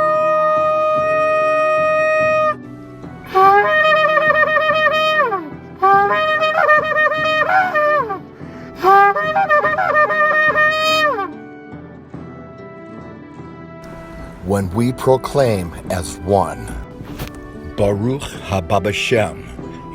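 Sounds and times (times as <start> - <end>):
held horn note: 0.0 - 11.4
ram's horn blasts: 0.0 - 11.4, 13.8 - 19.9.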